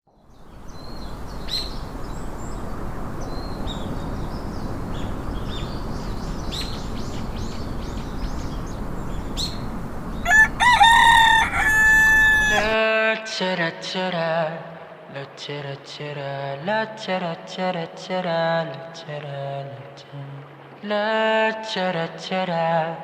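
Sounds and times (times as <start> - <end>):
small birds chirping: 0.1 - 12.7
outdoor background hiss: 0.1 - 23.0
rooster crowing: 10.2 - 12.8.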